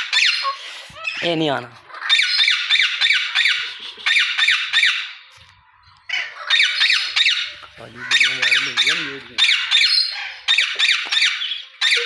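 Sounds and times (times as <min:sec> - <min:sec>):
parrots squawking: 0:00.0 - 0:05.3, 0:06.0 - 0:12.0.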